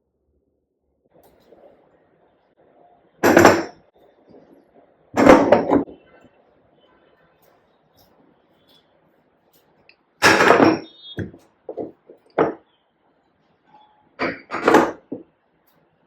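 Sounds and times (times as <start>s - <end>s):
household knocks: 3.2s - 3.8s, 5.2s - 5.9s, 10.2s - 12.6s, 14.2s - 15.3s.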